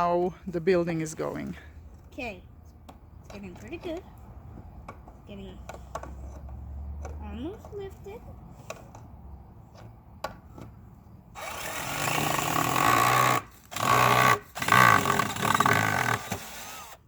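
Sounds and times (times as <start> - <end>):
power drill whirring: 11.4 - 17.0.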